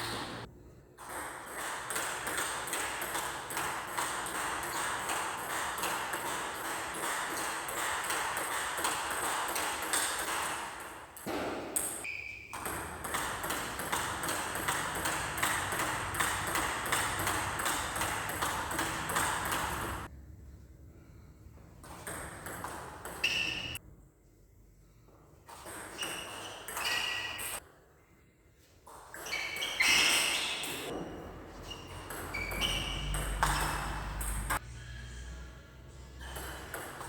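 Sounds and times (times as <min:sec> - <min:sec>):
ball hits and bounces: 0:00.0 - 0:20.1, 0:21.8 - 0:23.8, 0:28.9 - 0:34.6, 0:36.2 - 0:37.0.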